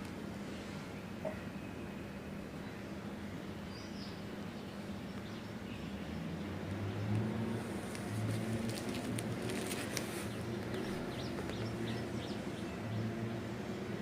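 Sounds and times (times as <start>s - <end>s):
small birds chirping: 3.5s - 13.5s.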